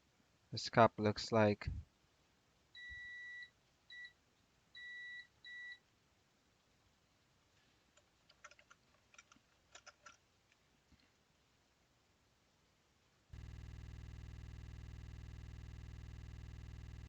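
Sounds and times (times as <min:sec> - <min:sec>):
multimeter beeps: 0:02.8 - 0:04.2, 0:04.8 - 0:05.8, 0:13.4 - 0:17.0.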